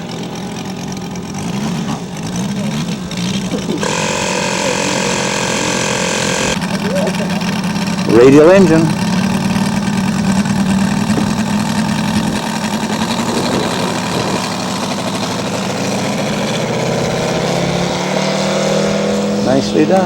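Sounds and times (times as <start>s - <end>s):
model aircraft engine running: 0.0s - 20.0s.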